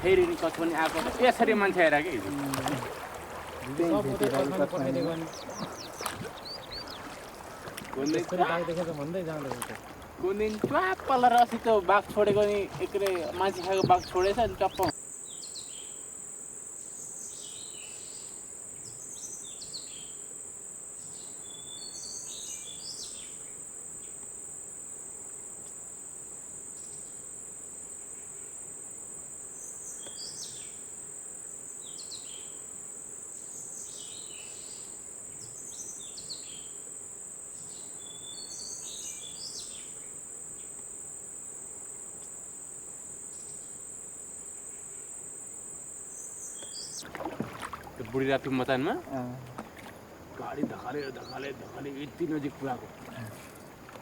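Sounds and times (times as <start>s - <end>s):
quick bird calls: 2.2s - 10.6s.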